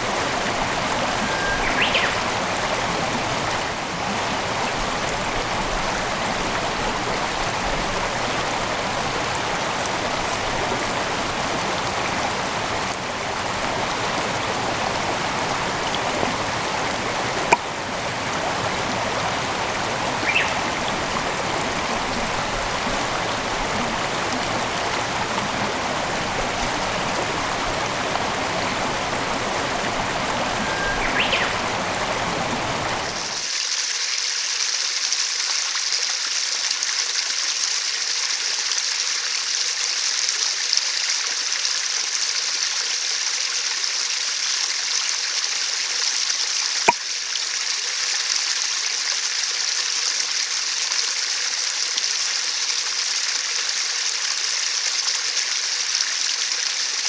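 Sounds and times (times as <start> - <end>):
stream flowing: 0.0 - 57.0
stream hissing rush: 0.0 - 57.0.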